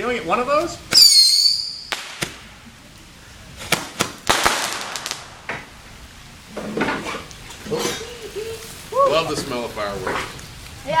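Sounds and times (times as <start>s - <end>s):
firework pops and crackles: 0.9s - 5.9s.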